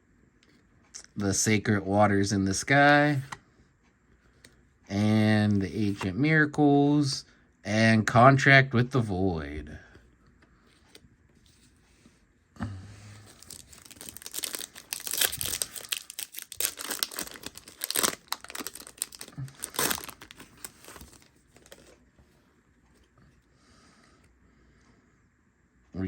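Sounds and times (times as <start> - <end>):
foil wrapper tearing and crinkling: 13.3 - 22.0.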